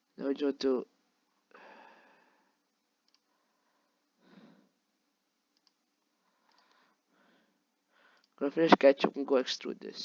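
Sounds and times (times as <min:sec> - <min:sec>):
soft breaths: 0:01.2 - 0:05.2, 0:05.9 - 0:08.4
computer mouse clicks: 0:03.0 - 0:03.3, 0:05.5 - 0:06.8.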